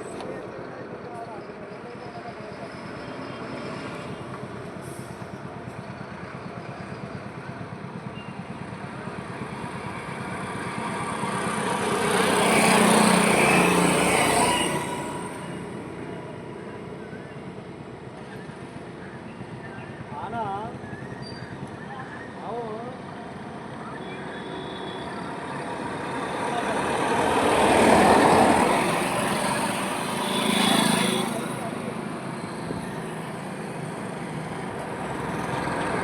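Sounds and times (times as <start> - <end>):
road traffic: 0.0 - 36.0
vehicle passing close by: 26.1 - 31.9.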